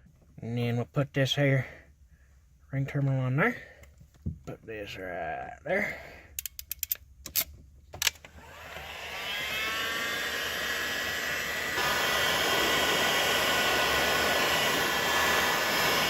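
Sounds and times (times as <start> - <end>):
sharp clicks: 6.4 - 8.3
heat gun fan whine: 8.0 - 16.0.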